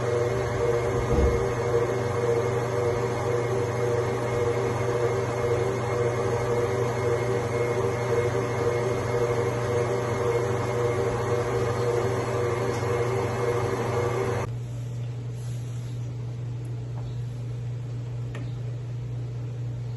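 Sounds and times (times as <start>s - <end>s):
kitchen appliance motor humming: 0.0s - 14.5s.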